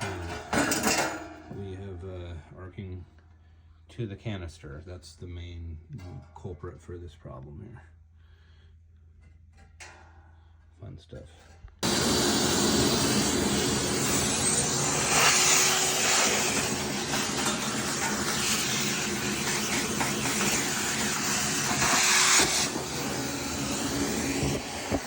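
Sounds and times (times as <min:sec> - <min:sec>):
machine rushing air: 0:11.8 - 0:25.0.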